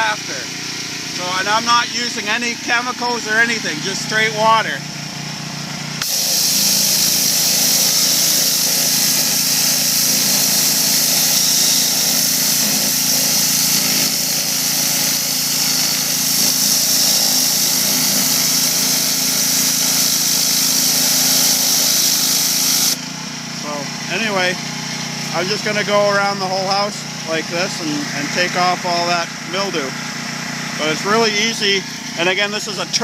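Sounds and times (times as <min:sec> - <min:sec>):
pressure washer engine hum: 0:00.0 - 0:33.0
high-pressure water spray hiss: 0:06.0 - 0:23.0.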